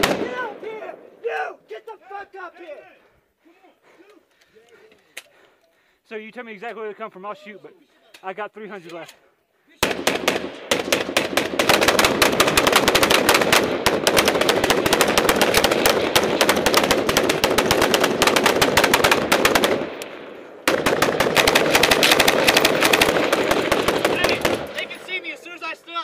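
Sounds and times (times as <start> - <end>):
machine gun firing bursts: 0.0 - 0.4, 9.8 - 20.0, 20.6 - 25.2.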